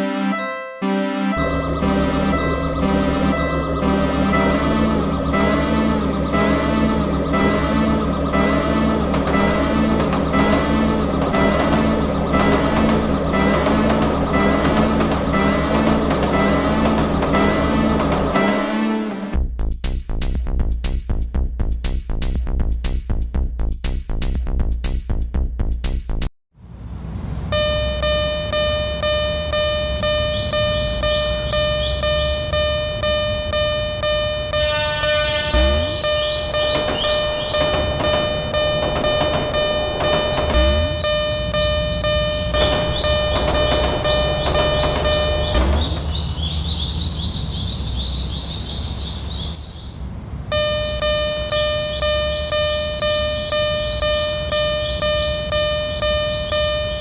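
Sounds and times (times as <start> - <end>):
level-crossing bell ringing: 0.0 - 19.2, 27.6 - 46.1, 50.5 - 57.0
rising high electronic chirps: 0.0 - 19.4, 27.6 - 48.4, 50.5 - 57.0
low rumble: 1.4 - 18.6.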